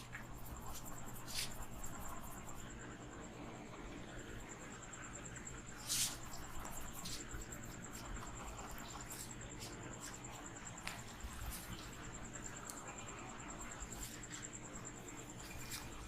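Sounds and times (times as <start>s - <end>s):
hands scratching through hair: 0.0s - 2.6s, 5.8s - 12.8s, 13.8s - 14.6s, 15.3s - 16.0s.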